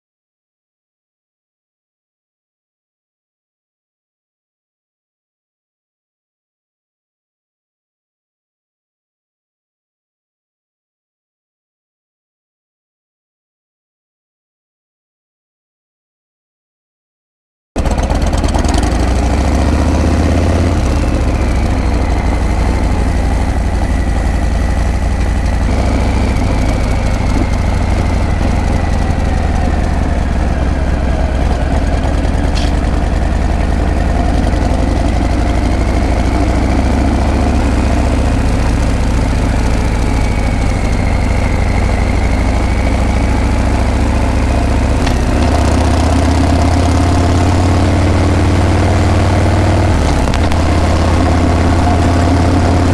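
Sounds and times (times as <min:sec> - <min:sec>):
motorcycle engine deep burble: 0:17.9 - 0:52.9.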